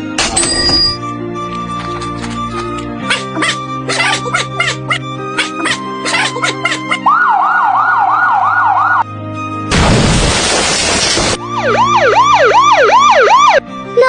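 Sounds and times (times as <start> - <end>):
background music: 0.0 - 14.0
siren yelping: 6.9 - 9.0, 11.4 - 13.6
loud hiss-like noise: 9.8 - 11.4.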